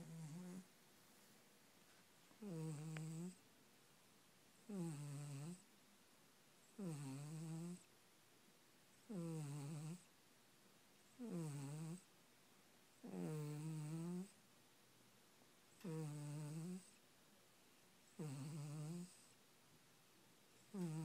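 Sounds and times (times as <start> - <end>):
cat snoring: 0.0 - 0.7, 2.4 - 3.4, 4.6 - 5.7, 6.7 - 7.9, 9.0 - 10.1, 11.1 - 12.1, 12.9 - 14.4, 15.7 - 17.0, 18.1 - 19.4, 20.6 - 21.0.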